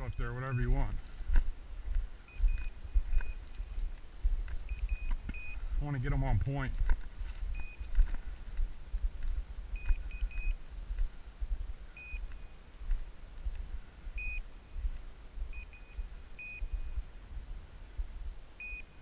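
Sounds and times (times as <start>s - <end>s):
wind rumble on microphone: 0.0s - 18.6s.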